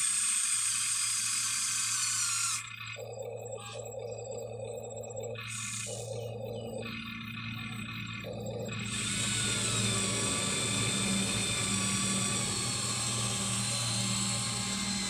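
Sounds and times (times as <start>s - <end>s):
electric motors whining: 0.0s - 15.0s
steady low hum: 3.0s - 15.0s.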